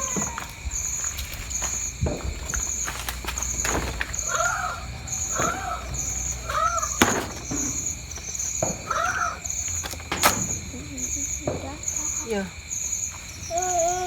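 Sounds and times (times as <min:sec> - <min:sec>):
insect chirring: 0:00.0 - 0:14.0.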